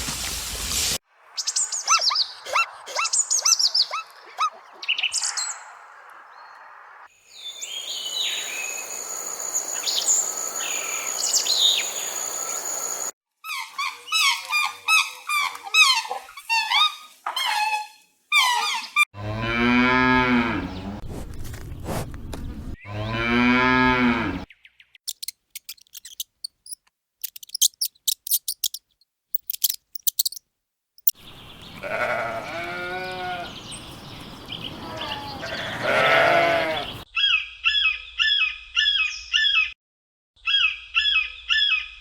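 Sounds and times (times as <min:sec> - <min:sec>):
hiss: 0:00.0 - 0:01.0
cow mooing: 0:19.2 - 0:20.8, 0:22.8 - 0:24.5, 0:34.7 - 0:37.0
falling chirps and whistles: 0:25.1 - 0:28.8
rapid chirp bursts: 0:25.1 - 0:30.4.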